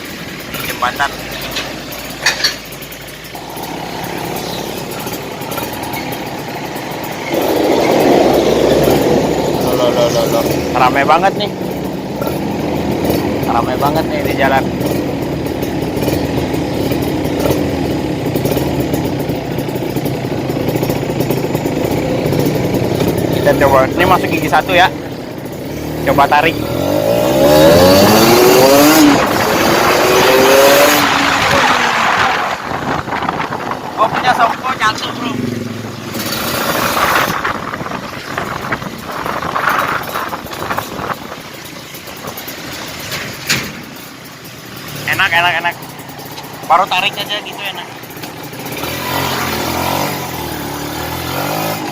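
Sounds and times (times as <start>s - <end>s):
motorcycle engine idling: 0.0s - 26.9s, 37.4s - 49.4s
wind rush on microphone: 31.2s - 34.7s, 36.5s - 41.6s.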